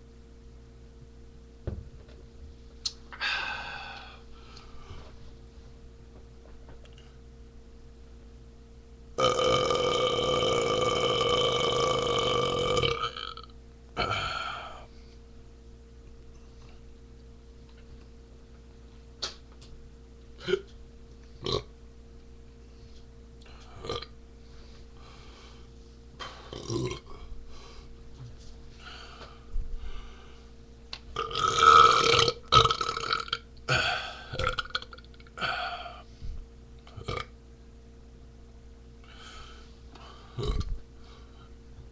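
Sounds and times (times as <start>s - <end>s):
man burping: 9.2s - 14.9s, 20.4s - 20.7s, 21.4s - 21.7s, 23.7s - 24.1s, 26.3s - 27.3s, 31.2s - 36.0s, 36.9s - 37.4s, 40.4s - 40.8s.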